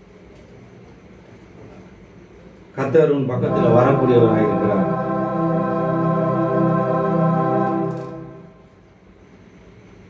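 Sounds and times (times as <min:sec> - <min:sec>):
faint hum: 0:03.2 - 0:08.8.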